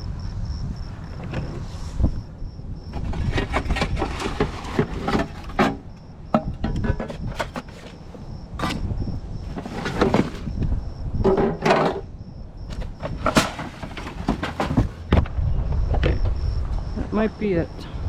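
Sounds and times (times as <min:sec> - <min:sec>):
objects knocking and clattering: 0:02.9 - 0:08.9, 0:09.5 - 0:10.6, 0:11.2 - 0:12.1, 0:12.7 - 0:15.4.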